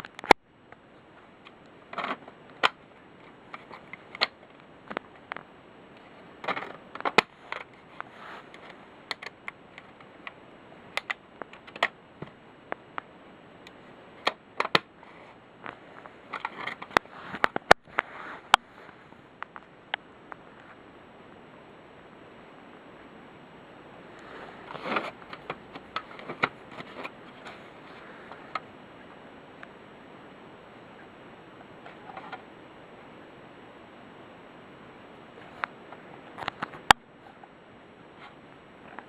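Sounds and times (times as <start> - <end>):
rustling and scraping: 1.1 - 10.3, 13.8 - 20.8, 24.1 - 28.6, 31.8 - 32.5.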